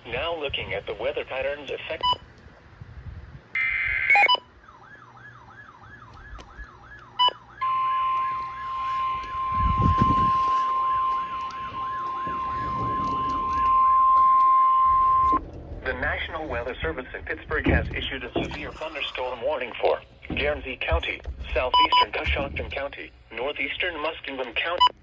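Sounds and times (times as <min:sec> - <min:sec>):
wavering siren-like alert tone: 0:03.6 - 0:15.4
steady warning alarm tone: 0:03.6 - 0:22.9
low rumble: 0:08.7 - 0:23.3.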